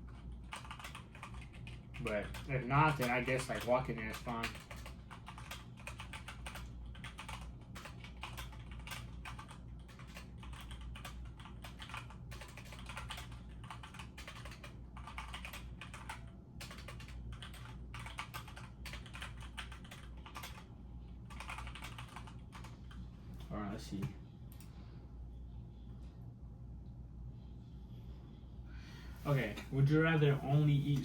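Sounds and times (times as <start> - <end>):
typing on computer keyboard: 0.0 - 23.0.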